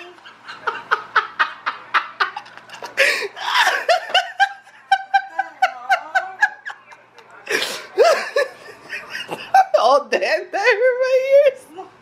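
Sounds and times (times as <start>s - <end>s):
person laughing hard: 0.5s - 6.4s.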